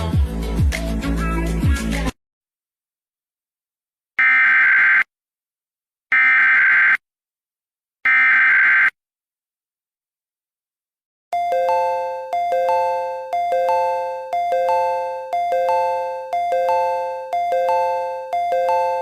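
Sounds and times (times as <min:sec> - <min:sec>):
chime of changing tones: 0:11.4 - 0:19.0.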